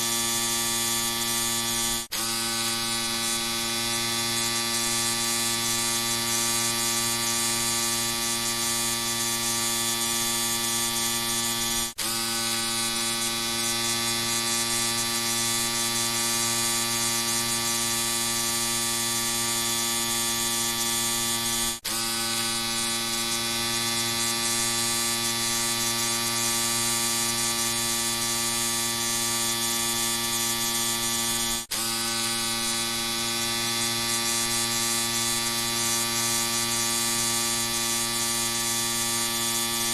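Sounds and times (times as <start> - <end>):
electric shaver buzzing: 0.0 - 39.9.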